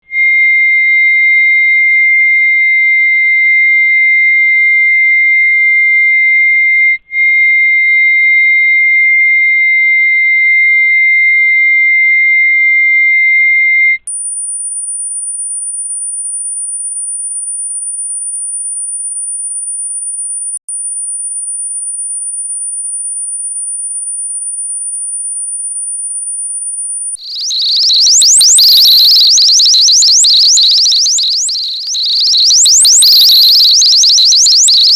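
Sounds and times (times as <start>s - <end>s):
shrill electronic tone: 0.0s - 14.0s, 27.1s - 34.9s
high-pitched electronic whine: 27.2s - 34.9s.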